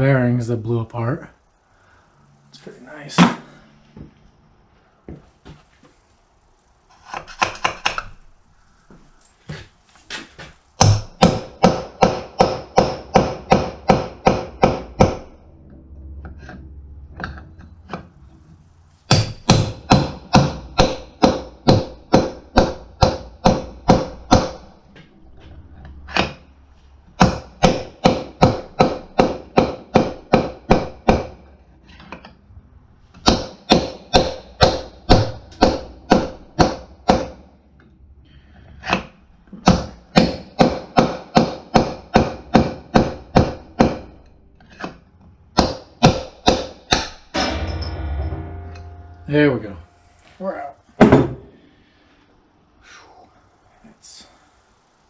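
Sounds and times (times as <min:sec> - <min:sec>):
hammer striking metal punch: 0:10.8 - 0:15.4, 0:19.1 - 0:24.8, 0:27.2 - 0:31.4, 0:33.2 - 0:37.5, 0:45.6 - 0:50.3.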